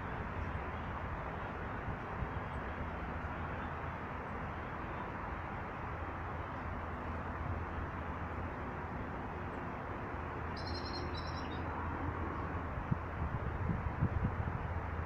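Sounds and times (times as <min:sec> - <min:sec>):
small bird call: 0:10.6 - 0:11.6.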